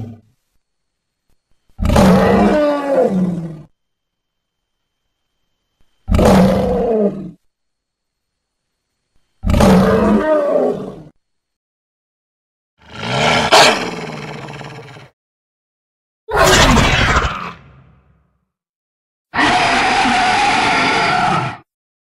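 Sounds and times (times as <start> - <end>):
creature roars: 1.8 - 3.7, 6.1 - 7.4, 9.4 - 11.1, 12.8 - 15.1, 16.3 - 18.0, 19.3 - 21.7.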